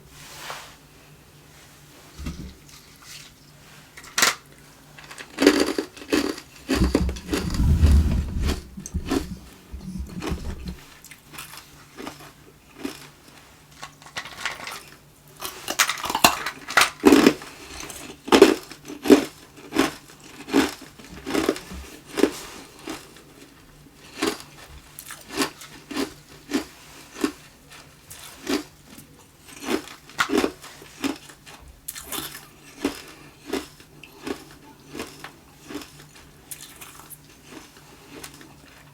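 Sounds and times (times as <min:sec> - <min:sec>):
low rumble: 0:06.8 - 0:10.8
ice being chewed: 0:29.4 - 0:38.8.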